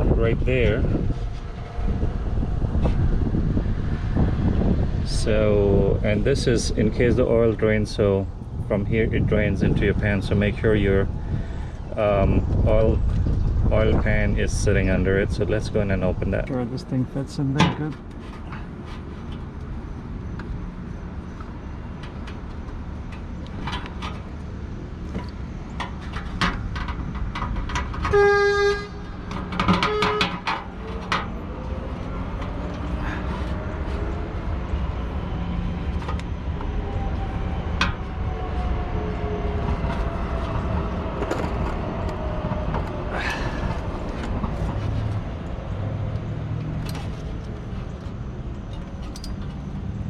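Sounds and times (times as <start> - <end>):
low outdoor rumble: 0.0 - 50.0
vehicle horn: 28.0 - 29.2, 29.8 - 30.4.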